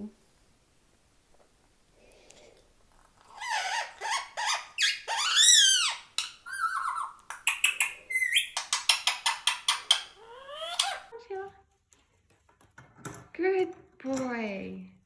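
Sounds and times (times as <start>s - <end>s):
parakeet squawking: 3.3s - 11.1s.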